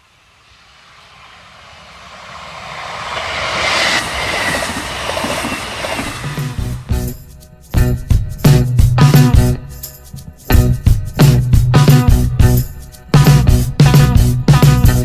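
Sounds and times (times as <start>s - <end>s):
train rumble and rail noise: 0.0s - 7.2s.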